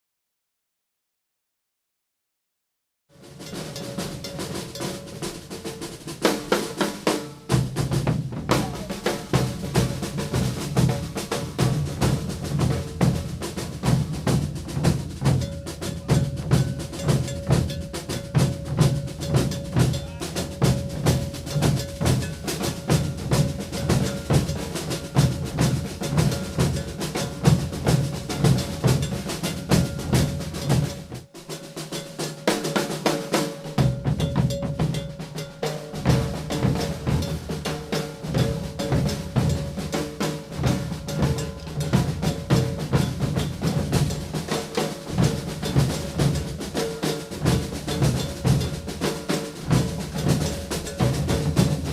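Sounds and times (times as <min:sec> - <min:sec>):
snare drums: 0:03.1 - 0:51.9
deep bass drums: 0:07.5 - 0:31.2, 0:36.0 - 0:51.9.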